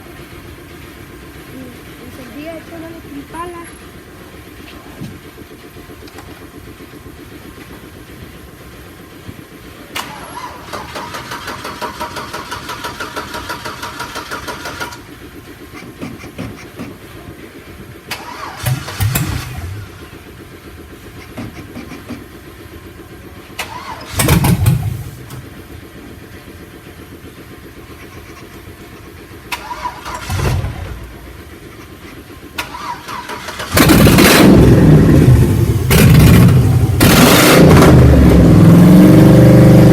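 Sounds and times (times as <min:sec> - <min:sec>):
car engine revving: 0:18.1 - 0:20.4, 0:23.6 - 0:25.6, 0:27.8 - 0:39.9.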